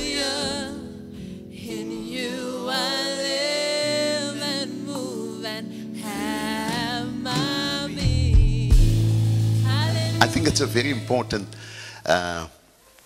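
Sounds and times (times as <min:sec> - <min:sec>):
person singing with vibrato: 0:00.0 - 0:12.2
held instrumental chords: 0:06.1 - 0:12.1.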